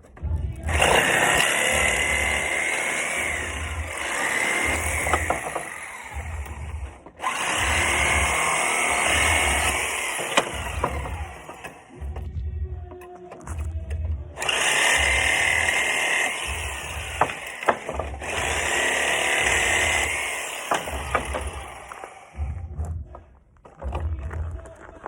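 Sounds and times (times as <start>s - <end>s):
reciprocating saw cutting nails: 0.6s - 12.2s, 14.4s - 22.5s.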